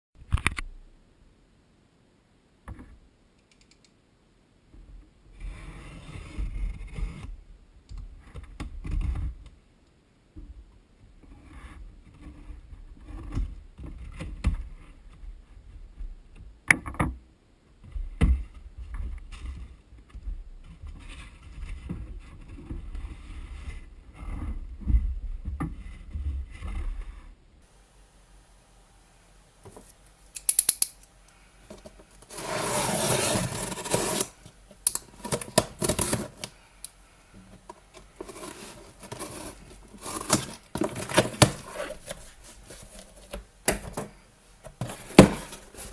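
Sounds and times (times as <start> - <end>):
packaging rustling: 29.6 - 45.9.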